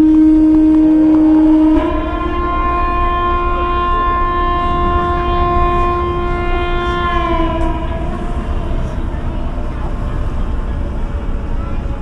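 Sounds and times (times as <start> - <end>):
low rumble: 0.0 - 12.0
ship's horn blast: 0.0 - 12.0.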